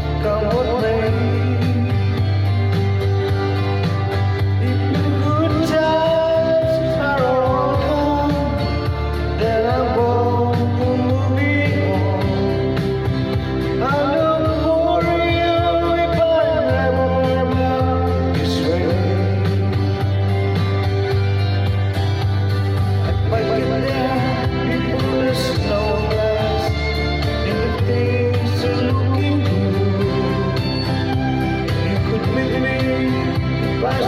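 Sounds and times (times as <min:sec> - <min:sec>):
country folk song: 0:00.0 - 0:34.0.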